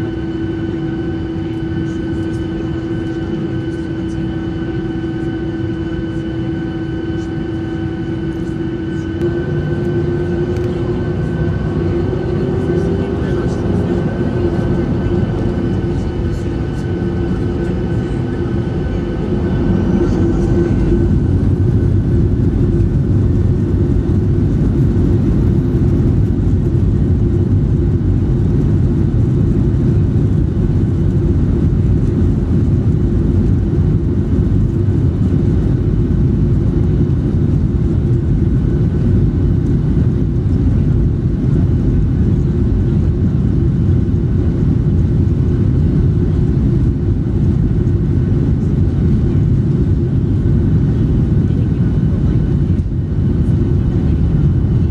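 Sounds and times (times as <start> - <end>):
faint whine: 0.0 - 54.9
jet engine and airflow roar: 0.0 - 54.9.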